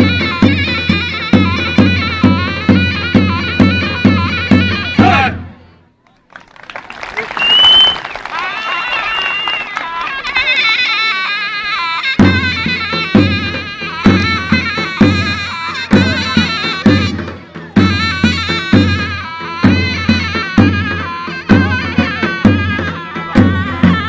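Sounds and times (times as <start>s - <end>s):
shrill double-reed melody: 9.9s - 24.0s.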